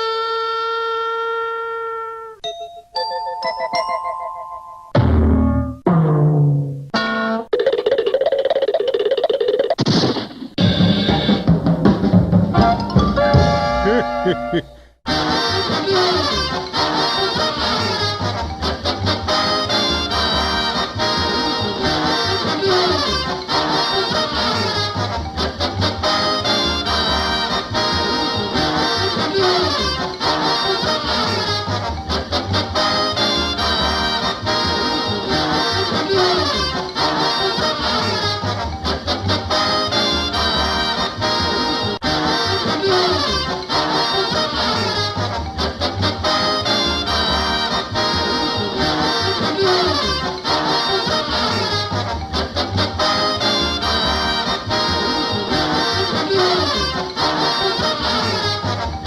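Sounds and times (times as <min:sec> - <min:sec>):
brassy swing cartoon music: 0:00.0 - 0:03.1, 0:03.9 - 0:07.6, 0:10.6 - 0:59.0
bouncing bass beat: 0:05.0 - 0:07.0.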